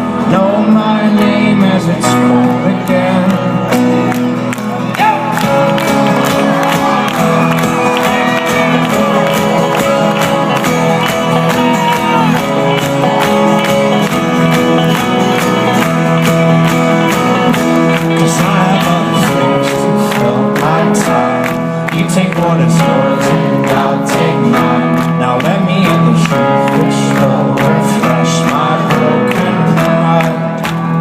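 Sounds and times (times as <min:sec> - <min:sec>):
crowd shouting and cheering: 0:00.0 - 0:31.0
live folk-rock band playing: 0:00.0 - 0:31.0.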